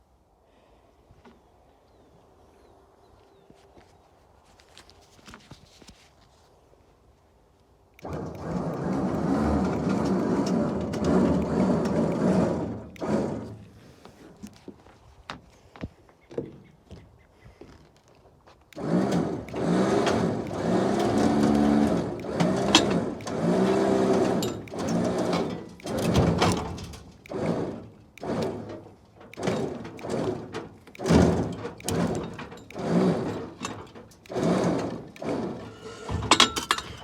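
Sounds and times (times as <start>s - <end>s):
electric winch motor whining: 8.0s - 13.8s, 18.8s - 37.0s.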